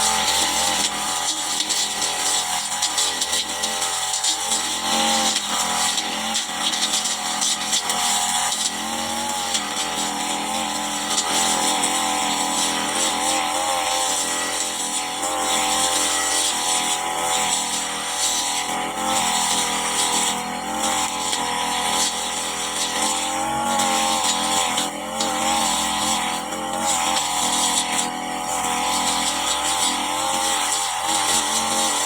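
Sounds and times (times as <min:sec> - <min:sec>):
brush cutter engine cutting grass: 0:00.0 - 0:32.0.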